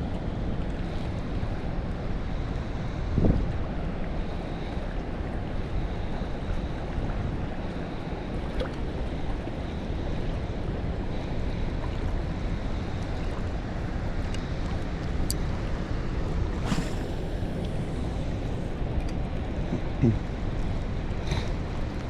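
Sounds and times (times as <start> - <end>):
wind buffeting microphone: 0.6 - 8.3.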